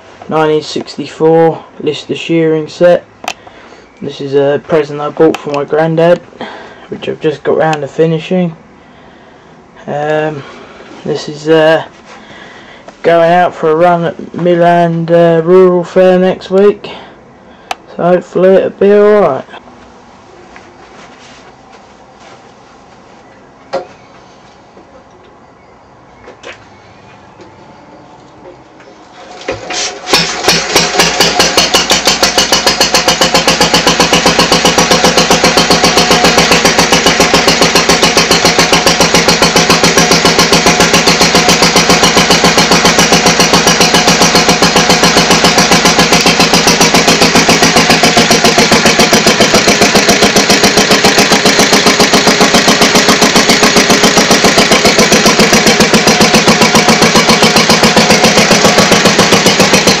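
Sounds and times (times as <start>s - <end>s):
stationary engine running: 29.5s - 60.0s.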